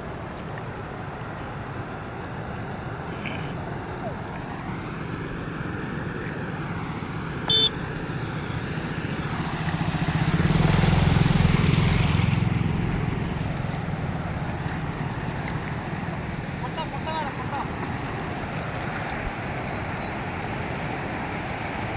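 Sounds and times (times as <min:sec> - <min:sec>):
floodwater rushing: 0:00.0 - 0:21.9
vehicle engine: 0:00.8 - 0:21.9
short sharp beep: 0:07.5 - 0:07.7.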